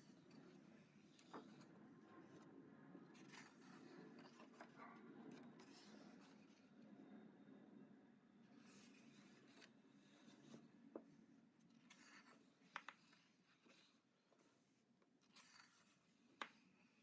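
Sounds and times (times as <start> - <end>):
paper pages rustling: 8.6 - 10.6.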